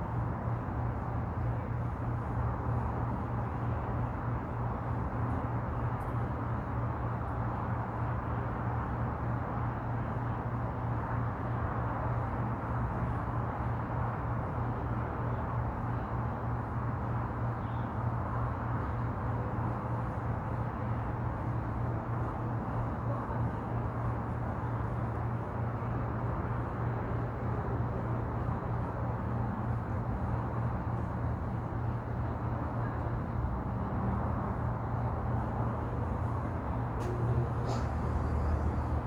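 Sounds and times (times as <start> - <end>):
constant low hum: 34.3 - 39.0.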